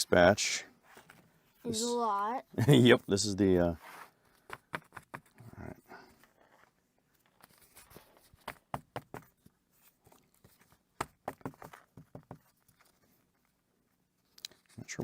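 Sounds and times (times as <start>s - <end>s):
book pages rustling: 0.8s - 1.6s, 6.2s - 14.8s.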